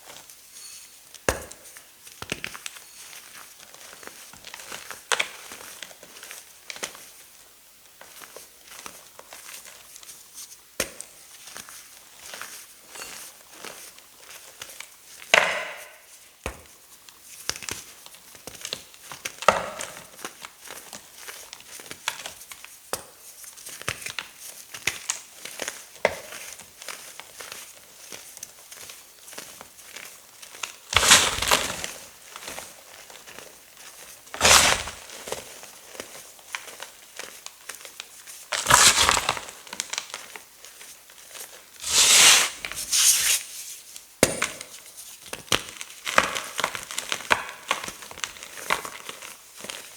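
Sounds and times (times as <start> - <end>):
chalk crackling and crumbling: 26.8 - 49.9
chalk crunching: 30.9 - 31.8, 38.6 - 39.6, 41.8 - 44.0.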